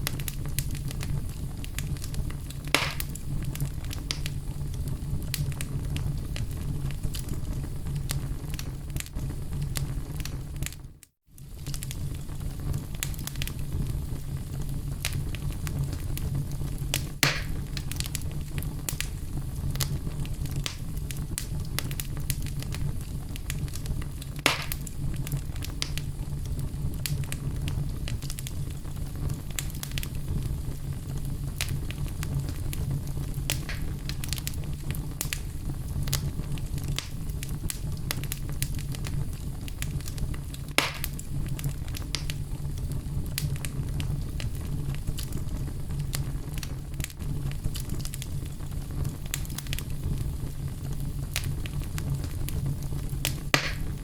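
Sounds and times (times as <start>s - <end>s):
fire pops: 0.0s - 54.0s
wood fire crackling: 0.0s - 54.0s.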